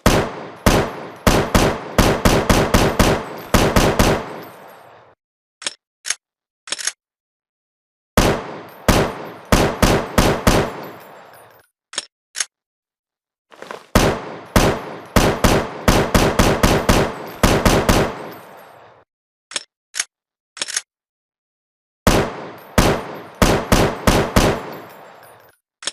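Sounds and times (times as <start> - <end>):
rapid gunshots with echo: 0.0 - 4.8, 8.2 - 11.3, 13.9 - 18.9, 22.1 - 25.3.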